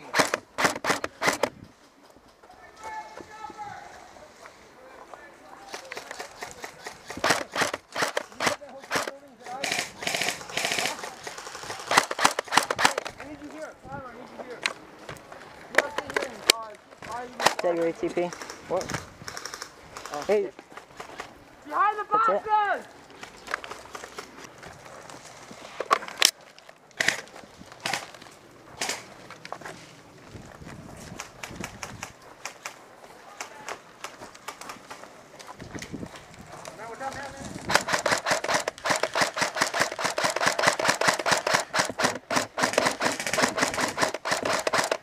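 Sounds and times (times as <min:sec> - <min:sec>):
airsoft gun firing bursts: 0:00.0 - 0:01.5, 0:05.7 - 0:13.1, 0:37.7 - 0:45.0.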